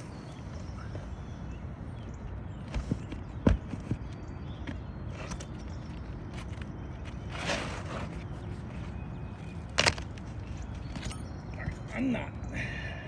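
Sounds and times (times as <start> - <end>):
scraping rustle on roof shingle: 2.5 - 11.1.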